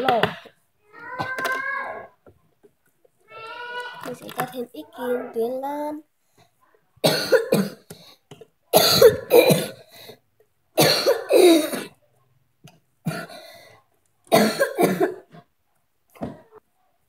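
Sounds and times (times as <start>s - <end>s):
girl coughing: 7.0s - 7.9s, 8.7s - 9.9s, 10.8s - 12.0s, 13.1s - 13.5s, 14.3s - 15.4s.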